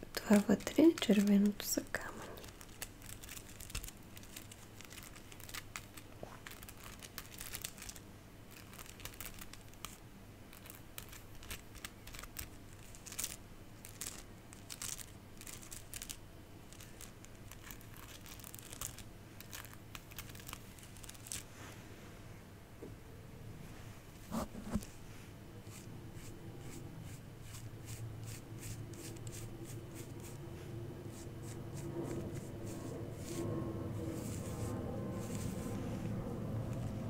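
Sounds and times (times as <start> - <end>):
soft crinkling and crackling: 0.0 - 22.2, 31.1 - 37.0.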